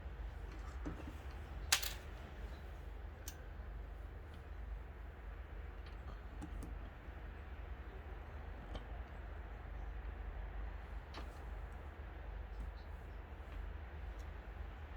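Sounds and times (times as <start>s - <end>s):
small parts clicking: 1.7s - 2.0s.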